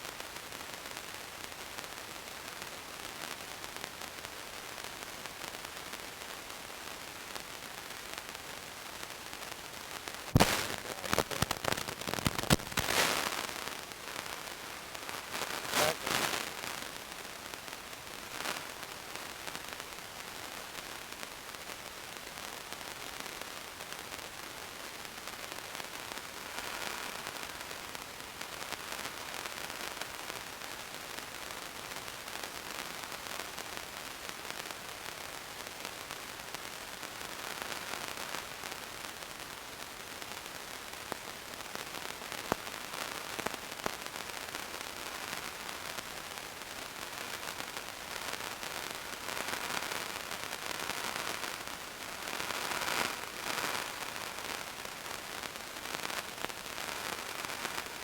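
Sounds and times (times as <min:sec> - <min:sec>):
static hiss with crackle: 0:00.0 - 0:58.0.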